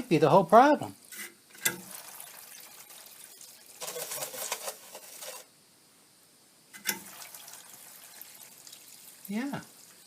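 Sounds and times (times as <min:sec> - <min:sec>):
air conditioner parts rattling: 0:03.8 - 0:05.5.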